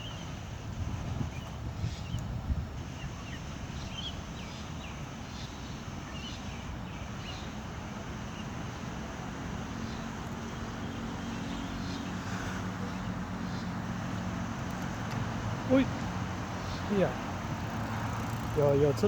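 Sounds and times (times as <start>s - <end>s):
wind rumble on microphone: 0.0s - 19.0s.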